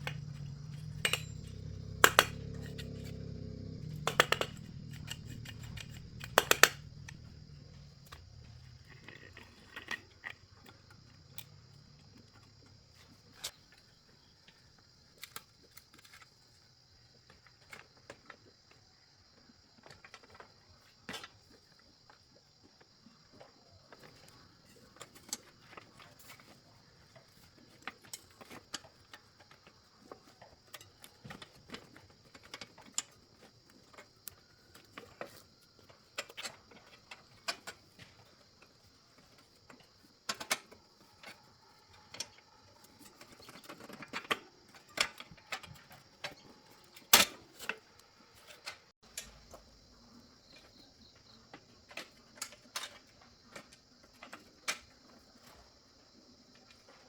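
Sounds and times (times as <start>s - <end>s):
hand tools clicking and tapping: 0.0s - 8.3s.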